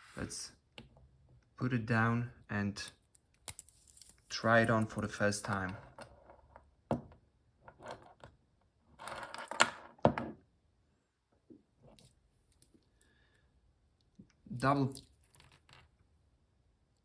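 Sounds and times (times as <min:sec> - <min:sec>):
metal watch bracelet jingling: 0:03.5 - 0:05.3.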